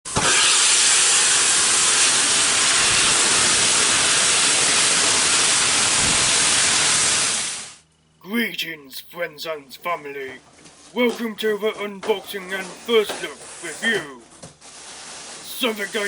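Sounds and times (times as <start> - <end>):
steam hissing: 0.1 - 7.8.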